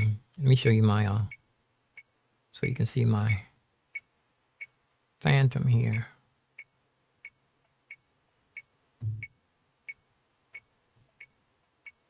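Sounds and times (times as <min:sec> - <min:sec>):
metronome ticking: 0:02.0 - 0:04.8, 0:05.6 - 0:12.0
low thud: 0:09.0 - 0:09.3.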